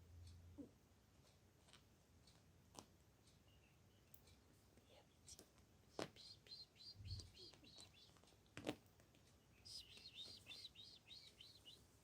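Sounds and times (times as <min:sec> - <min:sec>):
kitten chirping squeaks: 0:05.9 - 0:08.3, 0:09.5 - 0:11.9.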